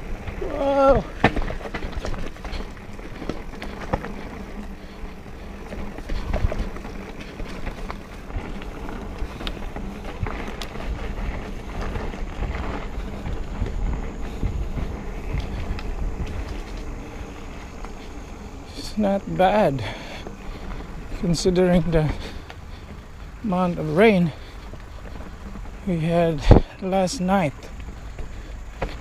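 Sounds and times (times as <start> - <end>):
bike clicking and knocking: 0.0 - 29.0
bike tyres rumbling on dirt: 0.0 - 29.0
rider exclaiming: 0.3 - 1.6.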